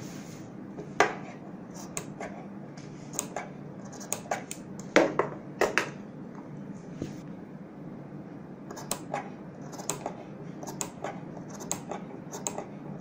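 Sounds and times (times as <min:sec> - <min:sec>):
low steady hum: 0:00.0 - 0:13.0
scissors snipping fabric: 0:09.7 - 0:10.1.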